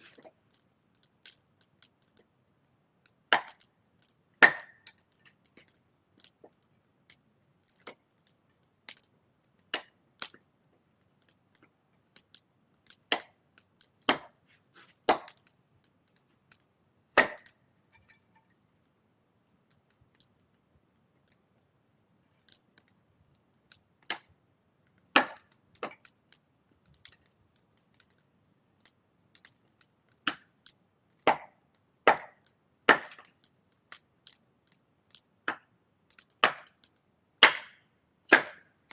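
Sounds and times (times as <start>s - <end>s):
firewood chopping strikes: 3.3s - 3.6s, 4.4s - 4.9s, 13.1s - 13.4s, 14.0s - 14.4s, 15.0s - 15.4s, 17.1s - 17.6s, 25.1s - 26.0s, 31.2s - 33.3s, 36.4s - 36.8s, 37.4s - 38.7s.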